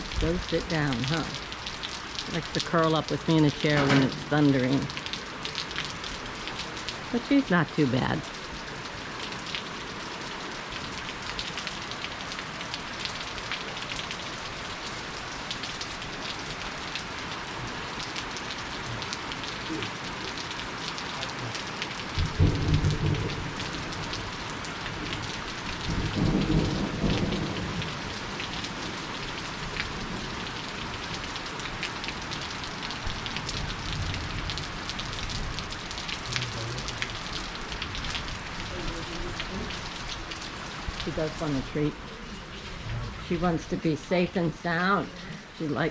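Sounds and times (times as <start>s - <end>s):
steady rain with dripping: 0.0s - 45.9s
low thunder rumbles: 22.1s - 28.7s, 33.1s - 43.8s.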